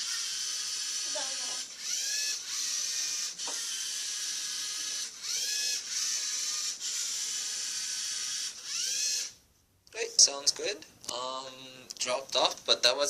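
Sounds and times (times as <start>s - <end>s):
robot motors and gears whirring: 0.0s - 9.3s.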